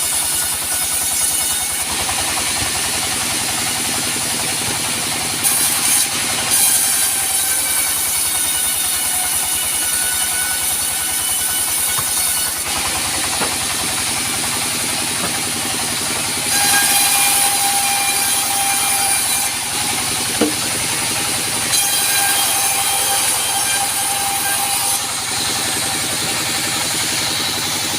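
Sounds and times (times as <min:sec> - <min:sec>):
band sawmill running: 0:00.0 - 0:27.9.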